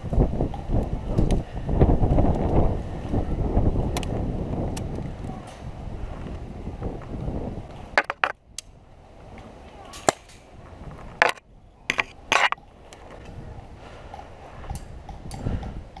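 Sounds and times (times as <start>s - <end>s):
wind-like rumble: 0.0s - 16.0s.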